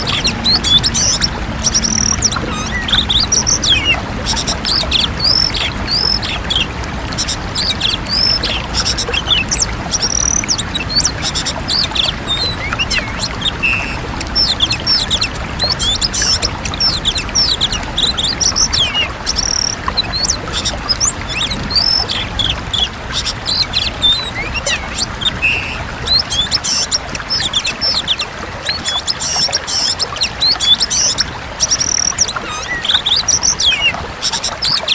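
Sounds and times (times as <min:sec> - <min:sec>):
bird singing whistled notes: 0:07.2 - 0:33.9.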